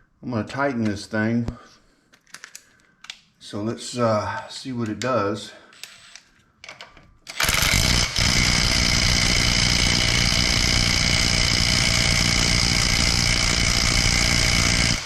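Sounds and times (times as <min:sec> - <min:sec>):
impact driver buzzing: 0:07.3 - 0:15.0.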